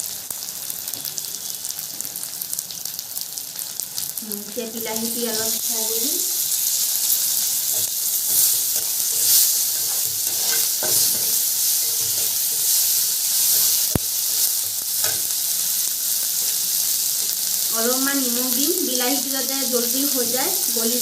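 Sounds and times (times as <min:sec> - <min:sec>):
tomatoes frying in hot oil: 0:00.0 - 0:21.0
spatula scraping a pan: 0:06.7 - 0:15.6.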